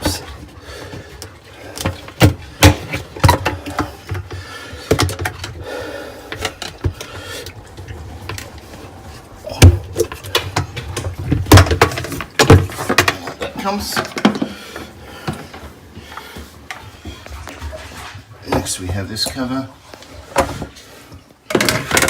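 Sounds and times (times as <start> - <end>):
plastic parts clicking and knocking: 0.0 - 5.6, 6.3 - 8.6, 9.6 - 15.7, 21.5 - 22.0.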